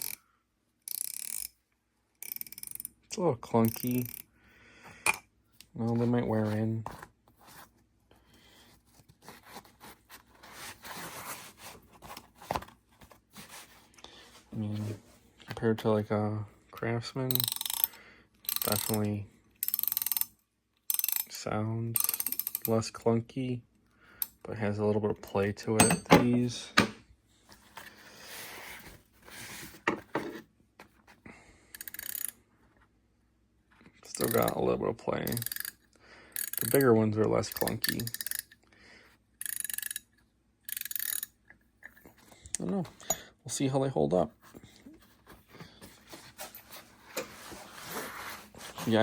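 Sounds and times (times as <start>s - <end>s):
ratchet wrench clicking: 0.0s - 0.2s, 0.9s - 1.6s, 2.2s - 3.0s, 3.7s - 4.3s, 17.3s - 19.0s, 19.6s - 21.3s, 22.0s - 22.7s, 31.7s - 32.4s, 35.4s - 35.8s, 36.4s - 36.9s, 37.8s - 38.6s, 39.4s - 40.1s, 40.7s - 41.4s
metal wrenches rubbing: 25.8s - 27.0s, 34.1s - 34.6s, 35.3s - 35.8s.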